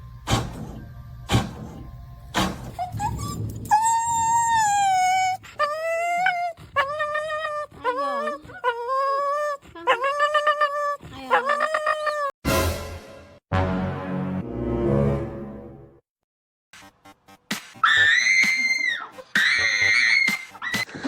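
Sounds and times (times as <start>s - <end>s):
dog howling: 2.8s - 12.3s.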